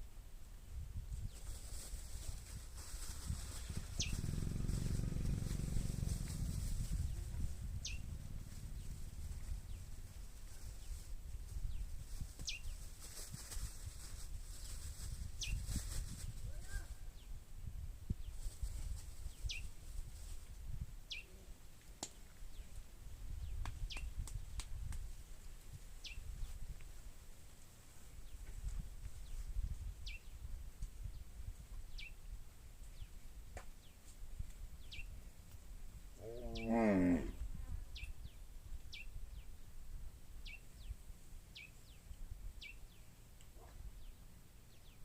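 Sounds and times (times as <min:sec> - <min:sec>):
bird chirping: 0:03.6 - 0:05.4, 0:06.8 - 0:10.0, 0:12.4 - 0:12.8, 0:36.2 - 0:36.8, 0:40.4 - 0:45.0
low rumble: 0:03.6 - 0:10.9.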